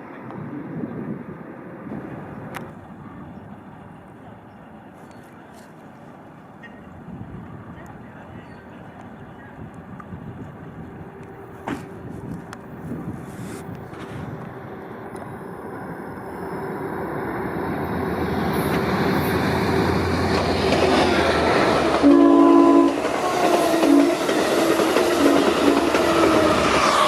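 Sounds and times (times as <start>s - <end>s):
diesel train rumbling: 0.0s - 27.0s
locomotive horn blasts: 22.0s - 24.3s, 25.2s - 27.0s.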